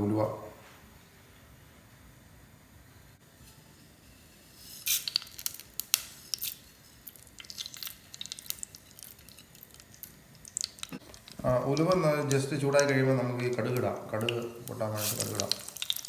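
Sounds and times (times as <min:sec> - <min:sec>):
seeds sizzling in hot oil: 0:03.2 - 0:16.0.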